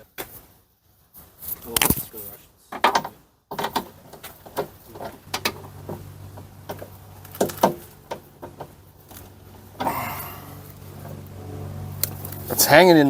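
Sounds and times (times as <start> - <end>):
tools and parts clicking and knocking: 2.7 - 9.2
low steady hum: 3.7 - 13.0.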